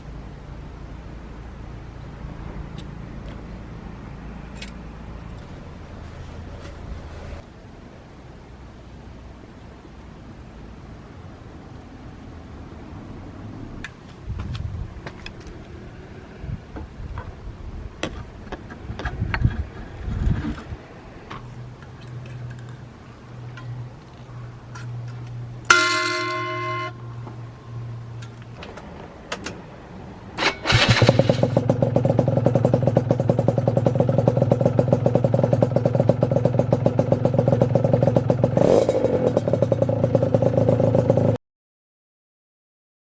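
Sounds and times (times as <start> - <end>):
short ringing tone: 25.7 - 27.2
two-stroke engine idling: 30.4 - 41.4.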